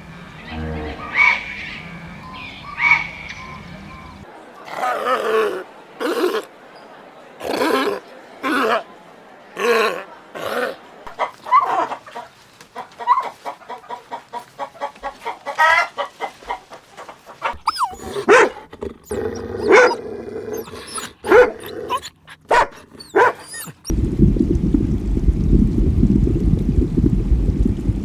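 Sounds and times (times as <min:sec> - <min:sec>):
animal calls: 0:04.6 - 0:08.9, 0:09.6 - 0:13.5, 0:17.3 - 0:23.9.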